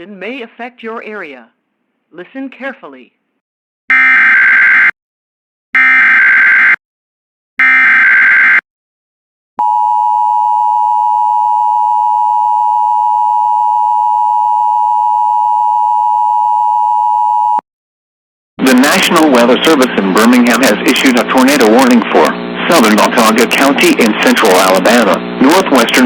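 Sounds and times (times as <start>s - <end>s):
buzzy digital data bursts: 18.6s - 26.0s.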